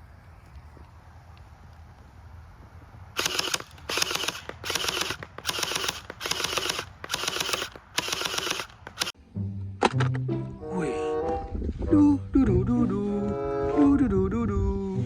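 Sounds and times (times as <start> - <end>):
toy gun rattling clicks: 3.2 - 9.2.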